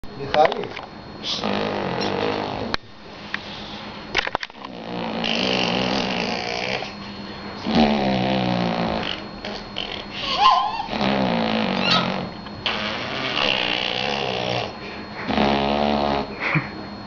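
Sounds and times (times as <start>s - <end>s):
snoring-like vocal noises: 1.2s - 2.8s, 4.7s - 7.0s, 7.6s - 16.6s
high rising squeaks: 9.0s - 14.2s.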